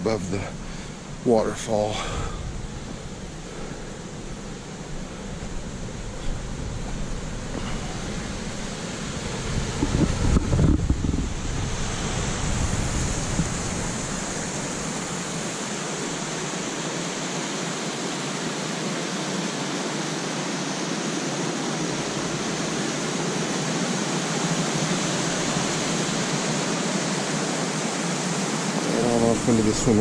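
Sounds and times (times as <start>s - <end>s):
waterfall rushing: 0.0s - 30.0s
wind rumble on microphone: 2.0s - 16.2s.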